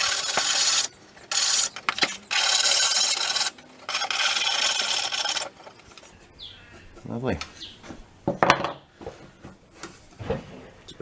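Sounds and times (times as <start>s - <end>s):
abrasive tool rasping strokes: 0.0s - 6.2s.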